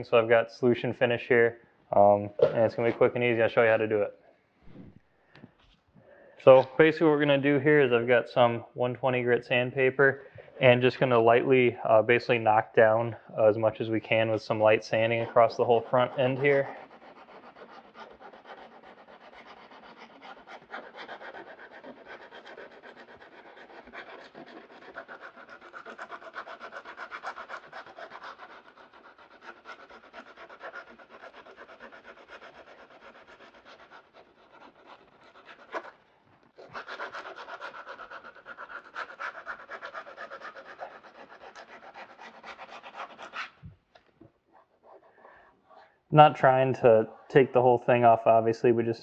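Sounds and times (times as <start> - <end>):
sandpaper rubbing on plastic: 13.4 - 43.8.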